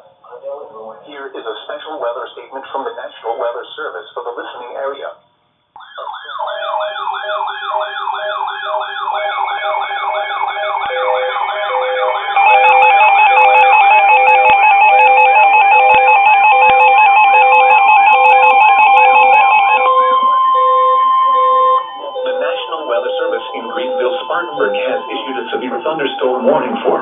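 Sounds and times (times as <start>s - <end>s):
electronic siren wailing: 5.8s - 27.0s
steady alert tone: 6.0s - 27.0s
fast high alternating beeps: 9.3s - 26.5s.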